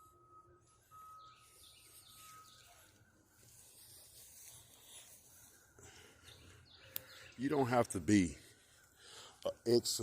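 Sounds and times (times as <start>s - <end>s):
thin high tone: 0.0s - 5.6s.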